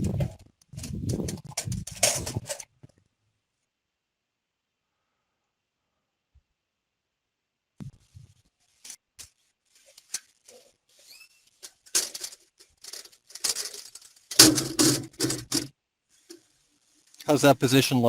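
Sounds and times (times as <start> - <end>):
scraping and rubbing bursts: 8.0 - 17.2.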